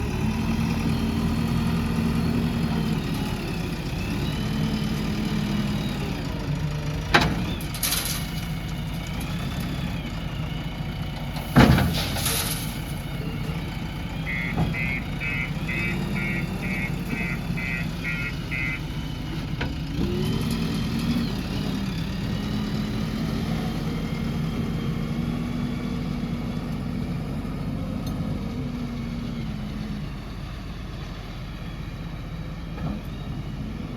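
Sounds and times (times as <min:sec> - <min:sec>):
diesel engine revving: 0:00.0 - 0:33.9
short beeps: 0:14.2 - 0:18.8.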